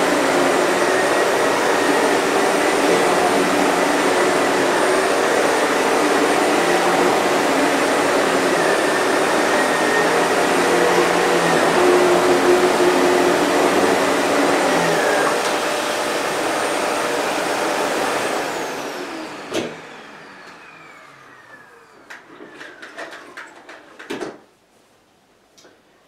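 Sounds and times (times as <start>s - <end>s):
vacuum cleaner motor whine: 0.0s - 23.9s.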